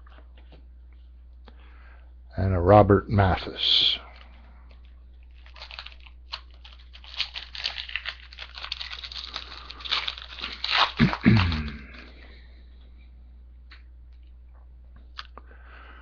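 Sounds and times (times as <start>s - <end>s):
foil wrapper crinkling: 4.1s - 12.4s.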